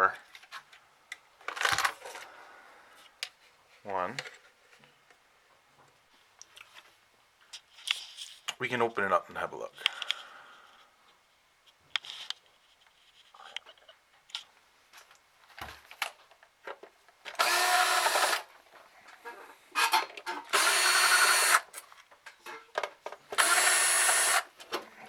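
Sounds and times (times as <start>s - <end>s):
electric screwdriver spinning: 17.4s - 18.5s, 20.5s - 21.7s, 23.4s - 24.6s.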